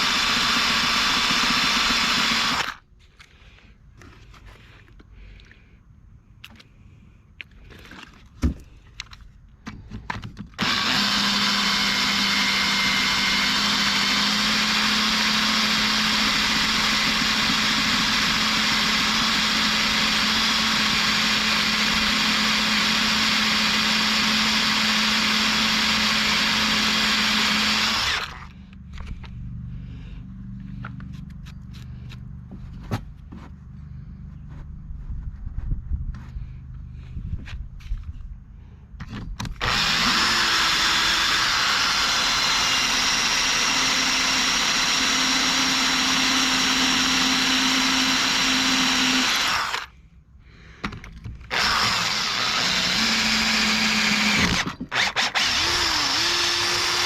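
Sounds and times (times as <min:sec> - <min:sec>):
electric drill drilling metal: 0:00.0 - 0:02.8, 0:10.6 - 0:28.6, 0:39.6 - 0:49.9, 0:51.5 - 0:57.0.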